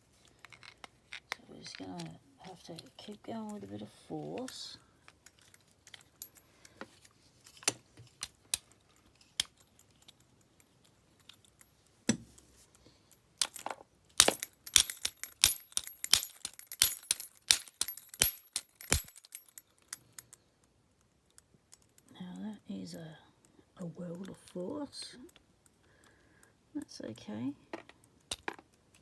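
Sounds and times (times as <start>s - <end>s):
metal tool striking padlock: 14.2s - 20.2s.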